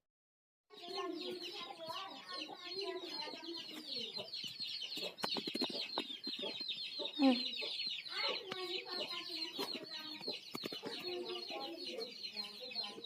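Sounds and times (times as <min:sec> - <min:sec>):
chickens clucking: 0:00.7 - 0:13.0
high chatter of chirps: 0:00.7 - 0:13.0
sharp clicks: 0:05.0 - 0:06.8, 0:10.2 - 0:10.9.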